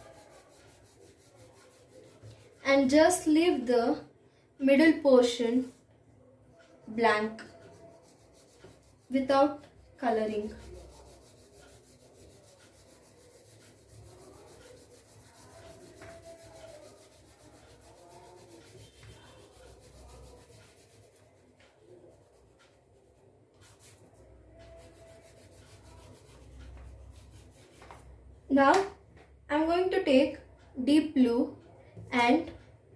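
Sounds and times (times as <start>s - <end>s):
oil pastel rubbing on paper: 0.0s - 3.2s, 7.2s - 22.8s, 23.5s - 28.1s.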